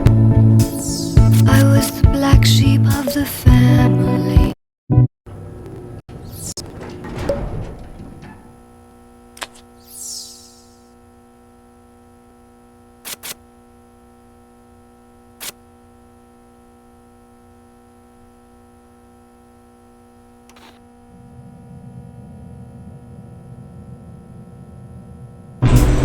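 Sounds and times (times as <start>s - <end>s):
electrical hum: 5.3s - 26.0s
low rumbling noise: 6.1s - 9.3s, 21.1s - 26.0s
sharp clicks: 13.1s - 13.4s.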